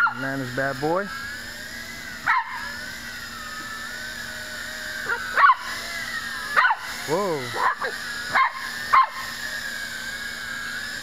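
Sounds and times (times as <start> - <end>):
drone propellers whining: 0.0 - 11.0
dog barking: 5.1 - 5.6.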